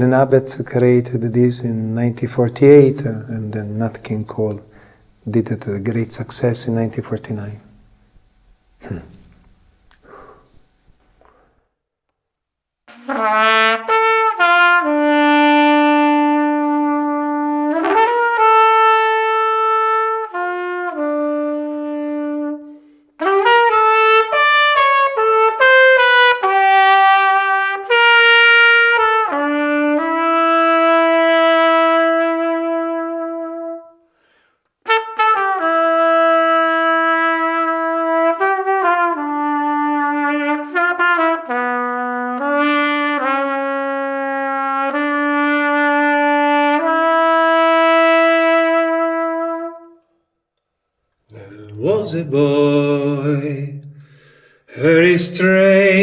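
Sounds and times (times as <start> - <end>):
solo trumpet melody: 12.9 - 34.1, 34.9 - 50.1.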